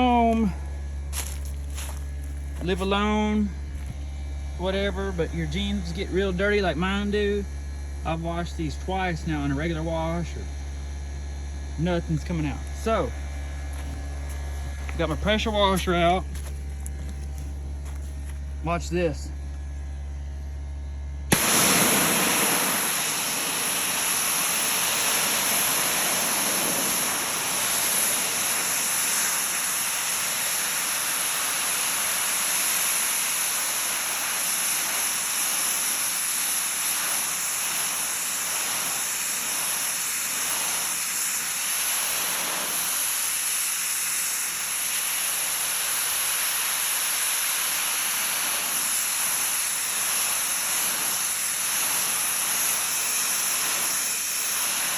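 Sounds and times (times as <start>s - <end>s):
pressure washer spraying: 1.1s - 2.8s, 21.3s - 54.9s.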